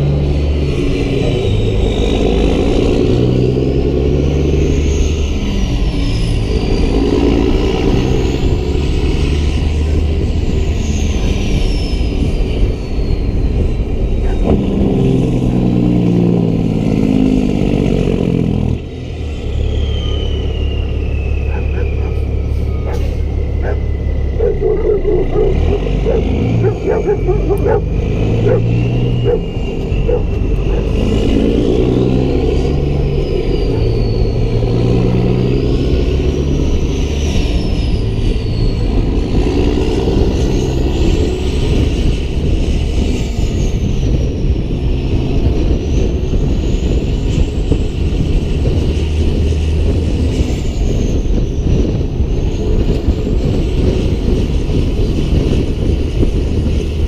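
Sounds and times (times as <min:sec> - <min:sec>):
heavy diesel engine running: 0:00.0 - 0:57.0
rising and falling whistle: 0:19.0 - 0:42.1.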